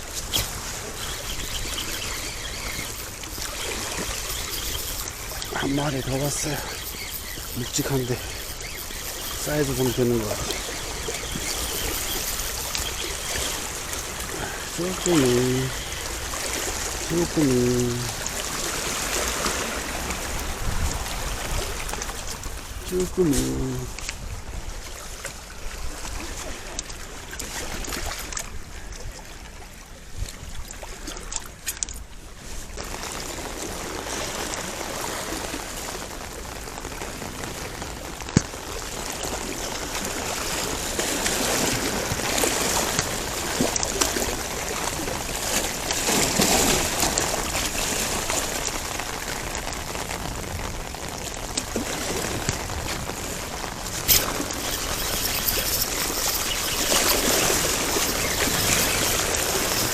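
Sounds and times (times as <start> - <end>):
water trickling and splashing: 0.0 - 59.9.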